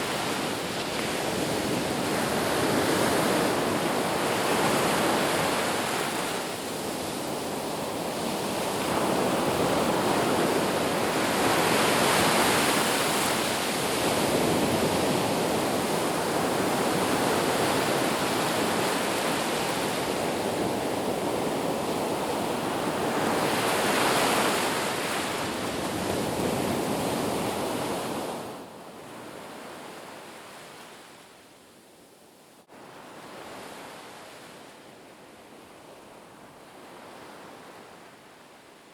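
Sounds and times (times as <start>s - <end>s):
sea waves washing onto shore: 0.0s - 31.0s.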